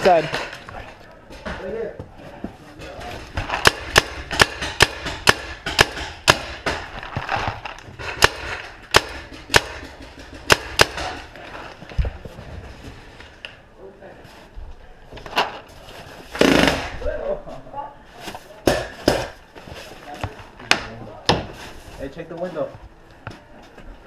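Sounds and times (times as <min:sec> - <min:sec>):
paintball markers firing: 0:03.5 - 0:11.3.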